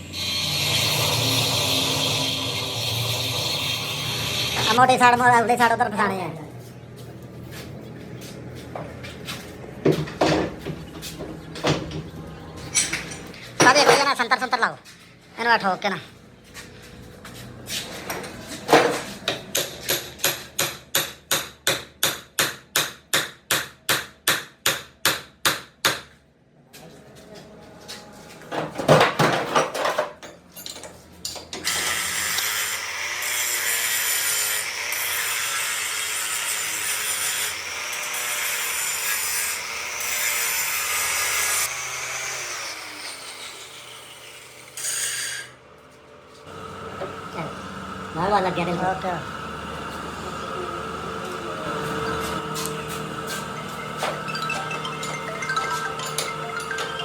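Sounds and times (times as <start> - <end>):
power tool grinding: 0.0 - 5.8, 31.6 - 57.0
hammer striking metal: 19.5 - 26.1.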